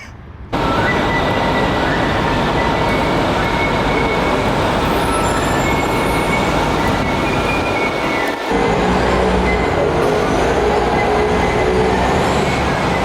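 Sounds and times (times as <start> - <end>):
train rumbling on track: 0.0 - 13.0
faint high squeals: 0.6 - 8.4.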